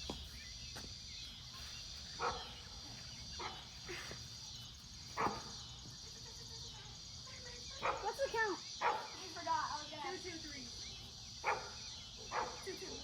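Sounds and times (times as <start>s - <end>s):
dog barking: 2.2s - 2.6s, 3.4s - 3.7s, 5.2s - 5.5s, 7.8s - 8.2s, 8.8s - 9.2s, 11.4s - 12.7s.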